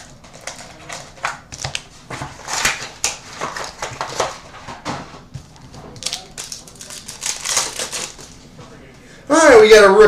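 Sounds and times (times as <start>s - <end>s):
packaging torn and crinkled: 5.9s - 8.4s.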